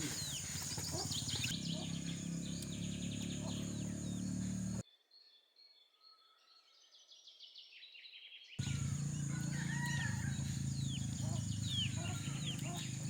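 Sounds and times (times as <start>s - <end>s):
birds chirping: 0.0s - 4.8s, 8.6s - 13.0s
insects trilling: 0.0s - 4.8s, 8.6s - 13.0s
steady low hum: 0.0s - 4.8s, 8.6s - 13.0s.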